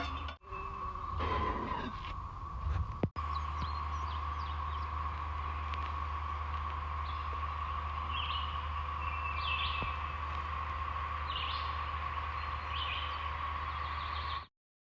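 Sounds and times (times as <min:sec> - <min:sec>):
steady background hum: 0:00.0 - 0:14.4
bird chirping: 0:03.2 - 0:05.1, 0:07.0 - 0:10.4, 0:11.2 - 0:11.8, 0:12.4 - 0:14.5.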